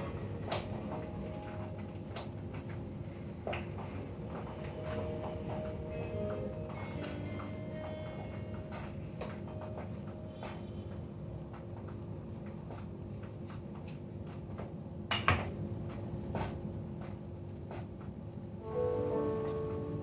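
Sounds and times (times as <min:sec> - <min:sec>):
piano music: 0:00.0 - 0:02.6, 0:03.9 - 0:11.5, 0:18.6 - 0:20.0
low steady hum: 0:00.0 - 0:20.0.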